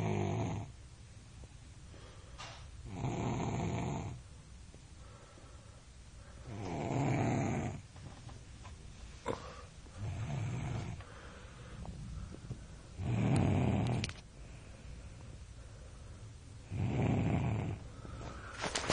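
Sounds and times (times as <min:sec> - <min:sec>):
boy snoring loudly: 0:00.0 - 0:00.7, 0:02.9 - 0:04.2, 0:06.5 - 0:07.8, 0:13.0 - 0:14.0, 0:16.7 - 0:17.8
quiet breathing: 0:01.8 - 0:08.2, 0:08.8 - 0:18.8.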